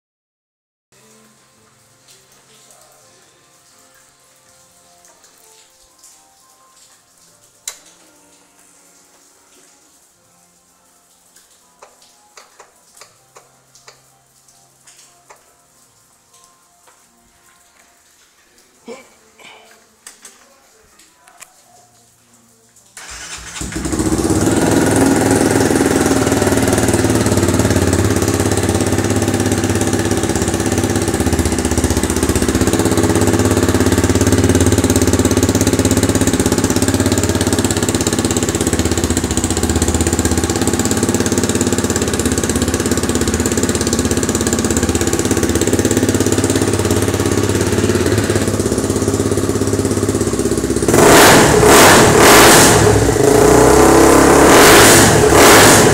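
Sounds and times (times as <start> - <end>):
motorcycle engine idling: 23.0 - 53.3
motorcycle engine revving: 23.0 - 55.9.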